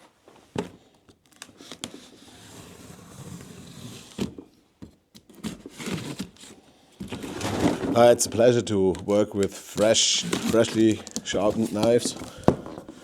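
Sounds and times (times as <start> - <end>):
cardboard clicks and knock: 7.0 - 13.0.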